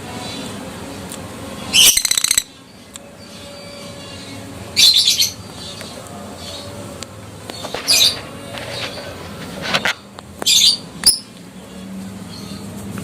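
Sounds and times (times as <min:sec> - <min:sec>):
bird shrill chattering: 0:01.7 - 0:02.5.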